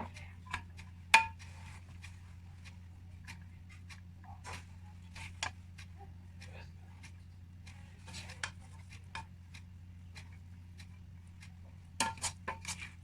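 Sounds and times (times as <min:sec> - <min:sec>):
low steady hum: 0:00.0 - 0:13.0
kitchen utensils and dishes clinking: 0:12.0 - 0:12.9.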